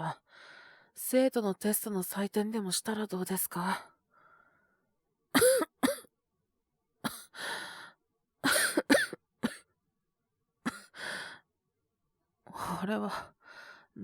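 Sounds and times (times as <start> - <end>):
man coughing hard: 5.4 - 6.0, 8.5 - 9.6.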